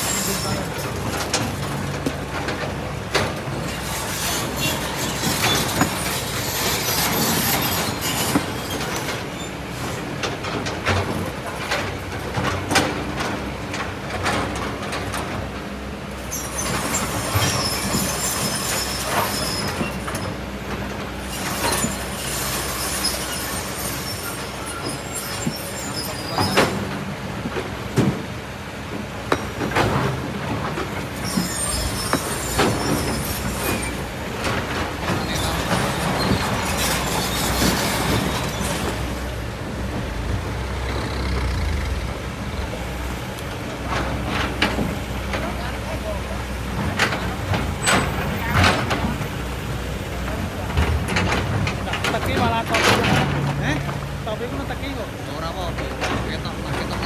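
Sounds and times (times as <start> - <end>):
metallic squealing and scraping: 0.0 - 1.9, 3.5 - 10.0, 16.3 - 20.3, 21.2 - 27.2, 29.4 - 39.4
excavator engine running: 0.0 - 57.0.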